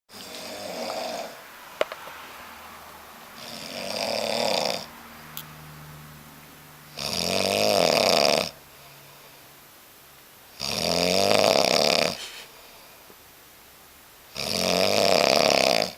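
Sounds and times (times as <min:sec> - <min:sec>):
man snoring: 0:00.1 - 0:01.4, 0:03.4 - 0:05.0, 0:06.9 - 0:09.0, 0:10.6 - 0:12.6, 0:14.3 - 0:15.9.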